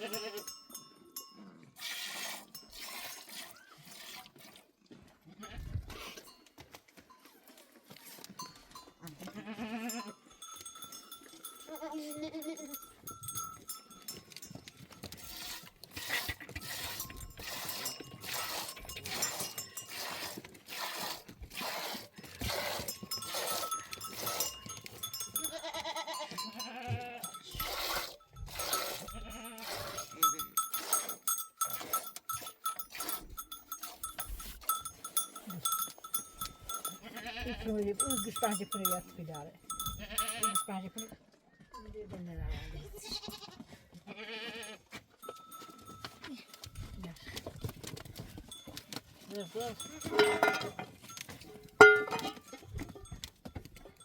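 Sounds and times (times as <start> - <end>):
sheep bleating: 0.0 - 0.5, 9.0 - 10.2, 11.7 - 12.8, 25.3 - 27.6, 28.6 - 30.4, 36.8 - 38.1, 39.8 - 40.6, 43.0 - 44.8
sheep bells jingling and clanking: 0.0 - 1.8, 2.4 - 3.2, 5.4 - 21.5, 22.1 - 43.6, 44.2 - 54.0.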